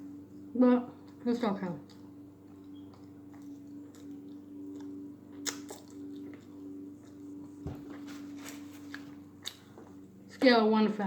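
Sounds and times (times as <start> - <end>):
steady low hum: 0.0 - 11.0
person chewing crunchy food: 1.8 - 10.3.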